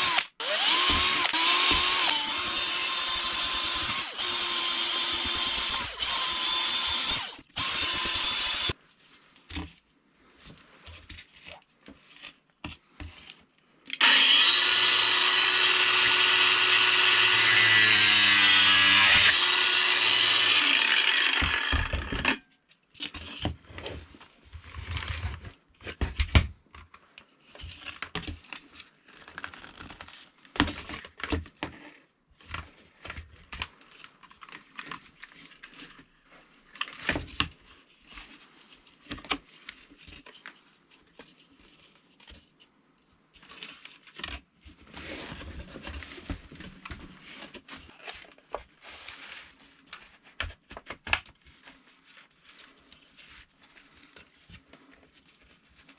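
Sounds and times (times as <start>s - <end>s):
power tool cutting off: 0.0s - 8.7s, 14.0s - 22.3s.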